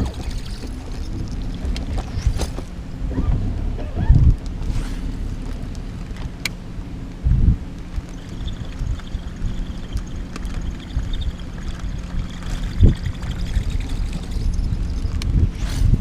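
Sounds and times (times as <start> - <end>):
steady low hum: 0.0 - 16.0
wind buffeting microphone: 0.0 - 16.0
faint high whine: 8.1 - 16.0.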